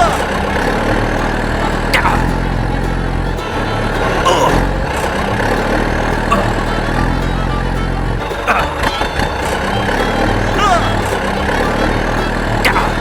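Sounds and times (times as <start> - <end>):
high downward squeaks: 0.0 - 13.0.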